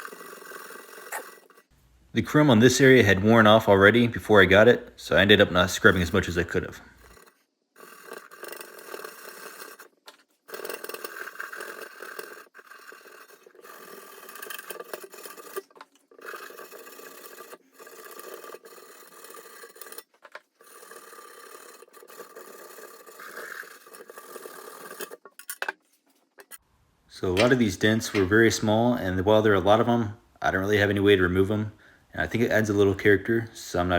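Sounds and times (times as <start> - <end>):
mesh scrubber rubbing on metal: 0.0 - 1.7, 5.8 - 26.6.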